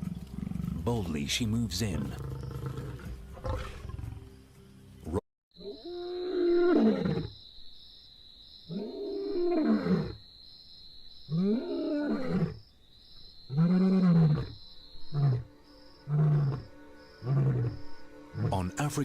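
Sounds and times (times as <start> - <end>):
lion roaring: 2.0 - 4.2.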